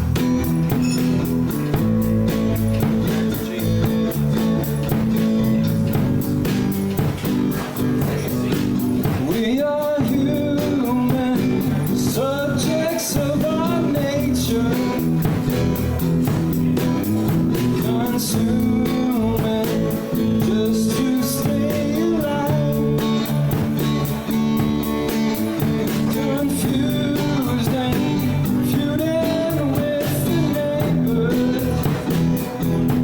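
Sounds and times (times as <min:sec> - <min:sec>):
guitar: 0:00.0 - 0:33.0
live band playing: 0:00.0 - 0:33.0
person singing: 0:07.6 - 0:33.0.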